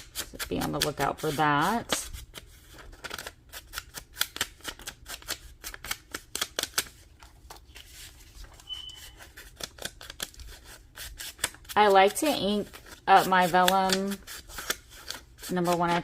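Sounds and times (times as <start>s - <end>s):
scissors snipping paper: 0.0s - 2.4s, 3.0s - 6.9s, 8.8s - 16.0s
brief high squeak: 8.6s - 9.2s.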